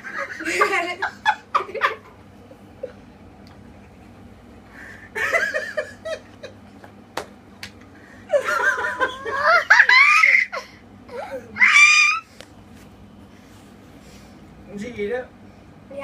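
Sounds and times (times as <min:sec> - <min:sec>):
people laughing: 0:00.0 - 0:02.2, 0:05.1 - 0:06.6, 0:08.3 - 0:10.7.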